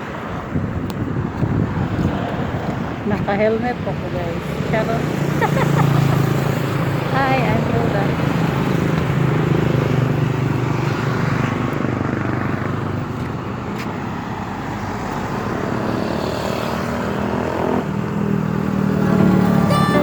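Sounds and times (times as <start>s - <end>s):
wind on microphone: 0.0s - 5.2s
road noise: 0.0s - 20.0s.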